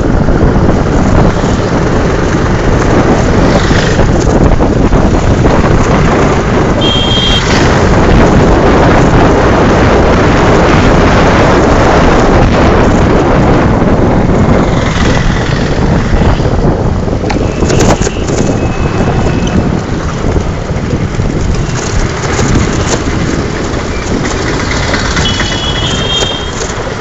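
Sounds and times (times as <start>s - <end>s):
motorcycle road and engine noise: 0.0s - 27.0s
wind rushing over microphone: 0.0s - 27.0s
brief high tone: 6.8s - 7.6s.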